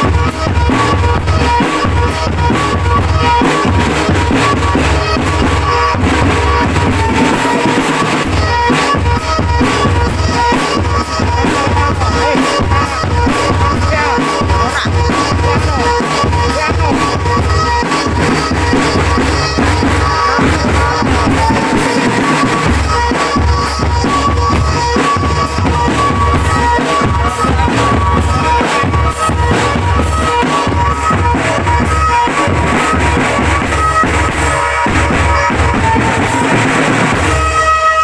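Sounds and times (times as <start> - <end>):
drumband music: 0.0 - 38.0
heavy bass drum beat: 0.0 - 38.0.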